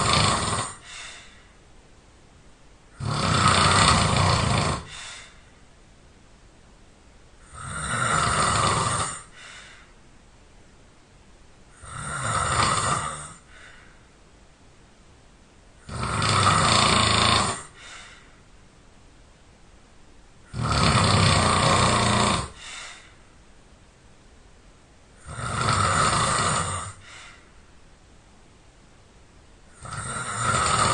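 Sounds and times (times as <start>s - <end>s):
person snoring loudly: 0.0s - 1.3s, 2.9s - 5.4s, 7.4s - 9.4s, 11.7s - 13.6s, 15.8s - 18.0s, 20.5s - 22.7s, 25.2s - 27.3s, 29.7s - 30.9s
soft breath: 0.7s - 1.7s, 4.8s - 5.7s, 9.1s - 10.1s, 13.2s - 14.2s, 17.6s - 18.6s, 22.5s - 23.4s, 26.8s - 27.7s.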